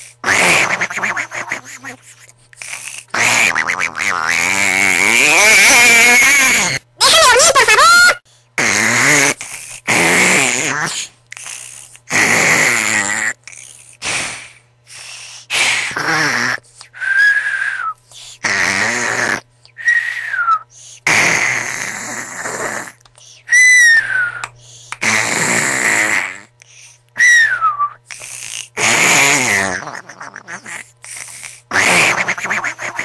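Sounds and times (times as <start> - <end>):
person snoring: 8.6 - 27.0, 28.1 - 33.0.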